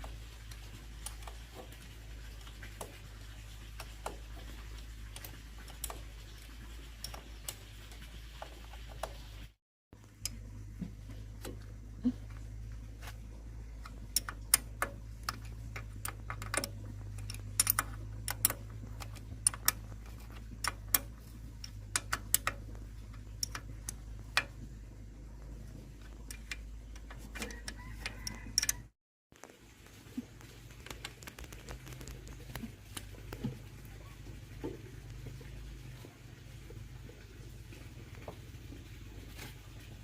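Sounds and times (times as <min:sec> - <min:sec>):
metallic clicks and taps: 0:02.4 - 0:09.2, 0:13.8 - 0:24.7, 0:25.6 - 0:28.9.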